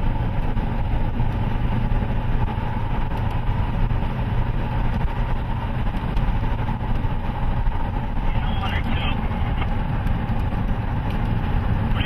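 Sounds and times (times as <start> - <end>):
vehicle engine low rumble: 0.0 - 12.0.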